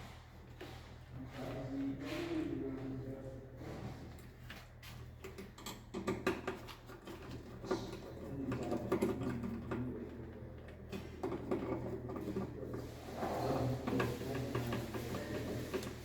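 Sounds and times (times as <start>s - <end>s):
light clicks and taps of tools: 4.2s - 9.8s.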